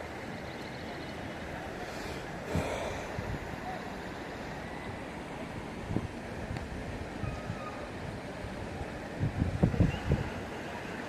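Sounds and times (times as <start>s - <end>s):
steady outdoor hiss: 0.0s - 11.0s
wind buffeting microphone: 2.5s - 3.6s, 5.6s - 10.6s.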